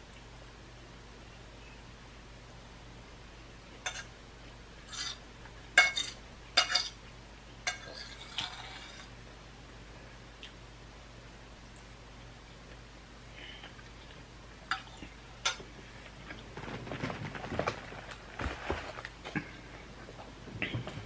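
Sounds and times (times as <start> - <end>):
metal utensil clinking on plate: 5.8 - 7.0.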